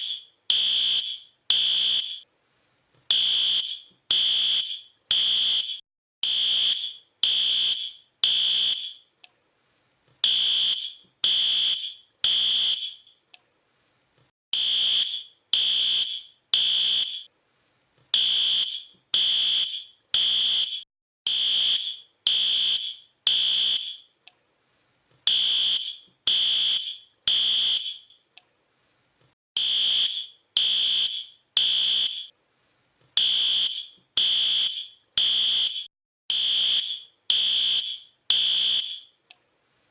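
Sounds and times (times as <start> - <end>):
fire alarm beeping: 0.0 - 2.2, 3.1 - 9.0, 10.2 - 13.1, 14.6 - 17.3, 18.2 - 24.1, 25.3 - 28.2, 29.6 - 32.3, 33.2 - 39.1.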